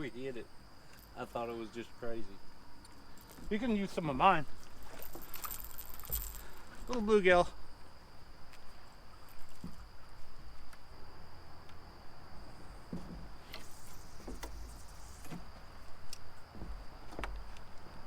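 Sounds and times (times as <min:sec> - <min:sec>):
night insects chirring: 0:00.0 - 0:18.0.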